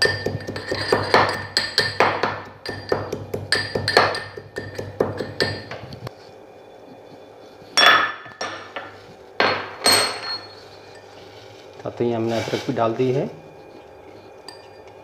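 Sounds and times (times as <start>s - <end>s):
pestle striking mortar: 0.0s - 5.8s.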